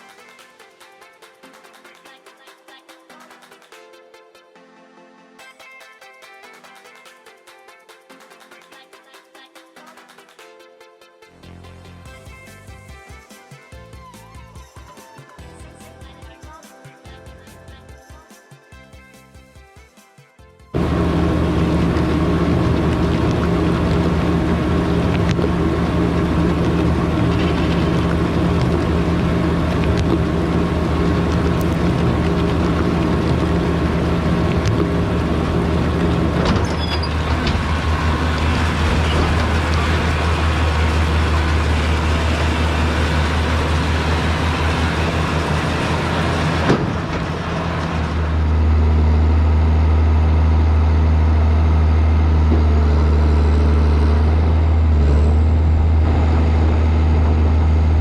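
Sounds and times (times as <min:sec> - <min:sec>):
baler machinery noise: 0:20.8 - 0:58.0
diesel tractor engine running: 0:20.8 - 0:58.0.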